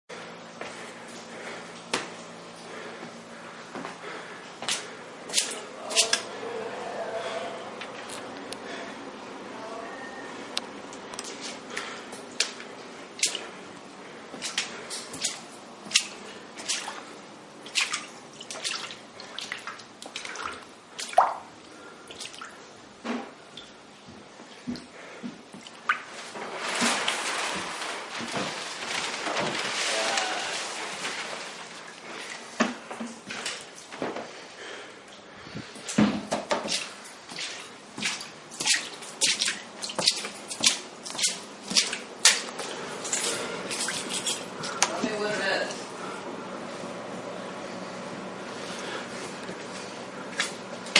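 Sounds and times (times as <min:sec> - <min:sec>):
water splashing on floor: 0:11.2 - 0:13.6, 0:14.3 - 0:22.6, 0:25.5 - 0:33.9, 0:35.8 - 0:45.2
water dripping: 0:17.6 - 0:22.6.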